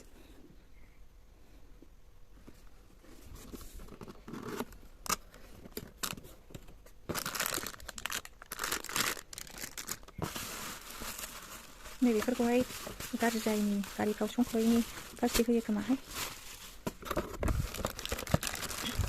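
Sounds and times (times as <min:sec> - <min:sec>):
plastic packaging crinkling: 0:07.0 - 0:19.0.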